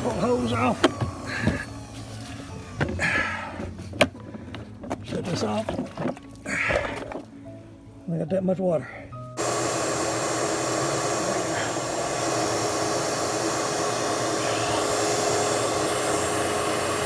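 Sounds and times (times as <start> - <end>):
shop vac motor whining: 0.0 - 4.2, 9.4 - 17.0.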